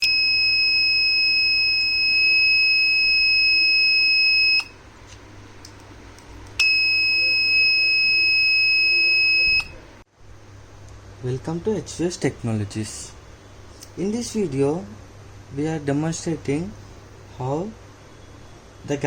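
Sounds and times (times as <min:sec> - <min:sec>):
high-pitched alarm buzzer: 0:00.0 - 0:04.7, 0:06.6 - 0:09.7.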